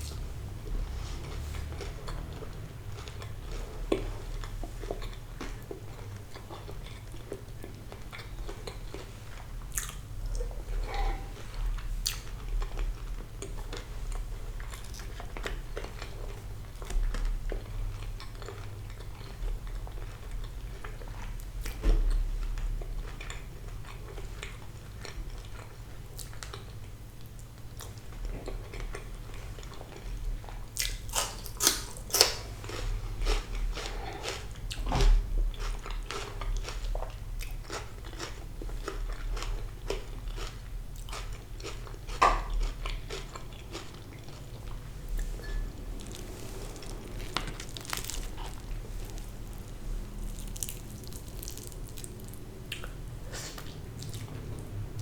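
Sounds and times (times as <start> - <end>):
wet chewing: 0.0 - 21.8, 27.8 - 54.8
person crunching crispy food: 46.0 - 52.5.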